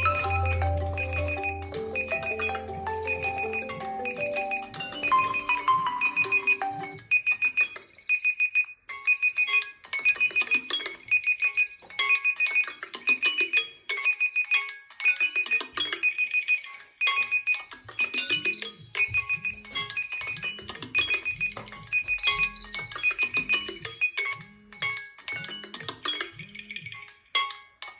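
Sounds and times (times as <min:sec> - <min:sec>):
melodic ringtone tune: 0:00.0 - 0:07.3.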